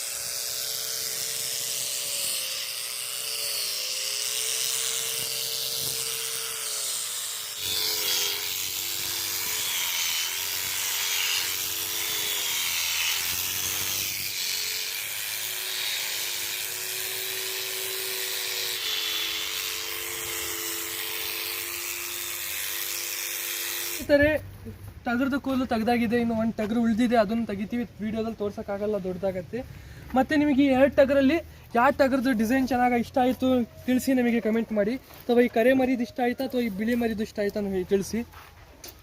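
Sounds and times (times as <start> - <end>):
electric shearing machine humming: 0.0 - 24.2.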